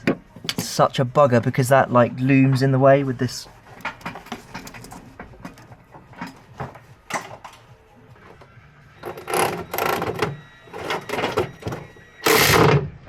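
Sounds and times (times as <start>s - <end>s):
tools clicking and knocking: 0.0s - 0.8s, 3.7s - 12.8s
electric ratchet driving bolt: 9.0s - 12.9s.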